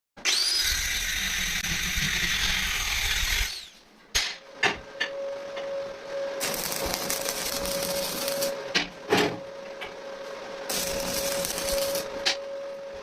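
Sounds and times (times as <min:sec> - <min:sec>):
power tool running: 0:00.2 - 0:03.8, 0:06.4 - 0:08.6, 0:10.7 - 0:12.2
steady hum: 0:03.9 - 0:13.0
machining noise: 0:05.2 - 0:08.7, 0:10.4 - 0:13.0.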